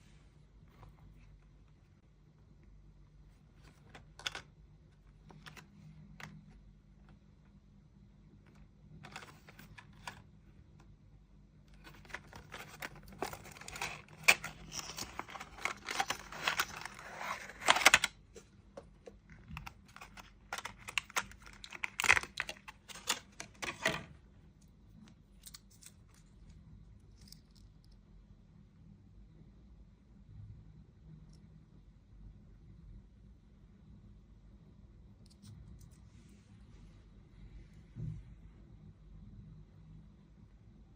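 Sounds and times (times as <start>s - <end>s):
card and plastic tearing: 11.8s - 18.1s, 19.5s - 24.1s
packaging rustling: 11.8s - 18.1s, 19.0s - 24.1s.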